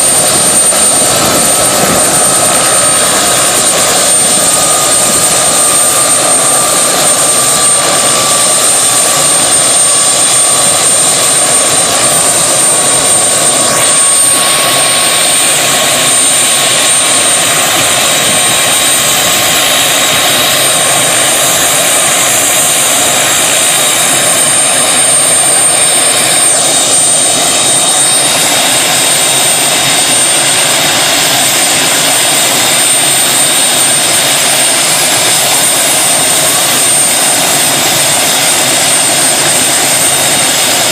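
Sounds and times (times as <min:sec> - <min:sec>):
helicopter engine and rotor noise: 0:00.0 - 0:40.9
thin high whine: 0:00.0 - 0:40.9.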